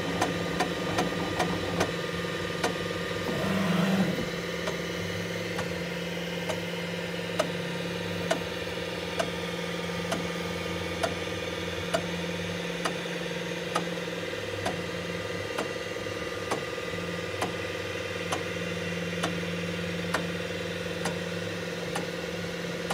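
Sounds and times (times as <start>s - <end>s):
machine humming: 2.9s - 6.2s.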